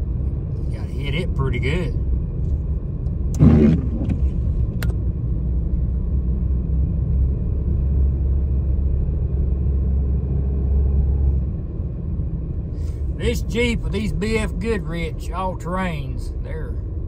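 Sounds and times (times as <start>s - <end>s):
car engine under load: 0.0s - 17.0s
tyre rumble: 3.4s - 4.4s.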